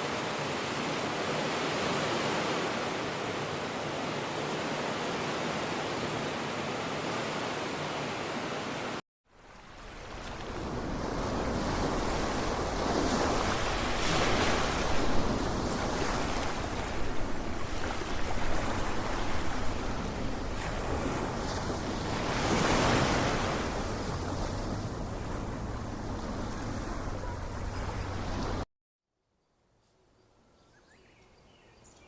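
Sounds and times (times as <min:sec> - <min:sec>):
ocean waves washing in: 0:00.0 - 0:28.7
low wind rumble on microphone: 0:09.9 - 0:28.6.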